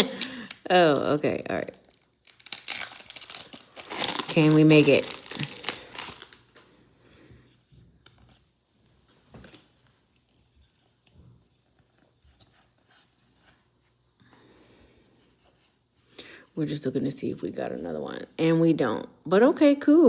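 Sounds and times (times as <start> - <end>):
trading cards rustling and clicking: 0.0 - 6.6
wrapper crinkle: 0.0 - 6.7.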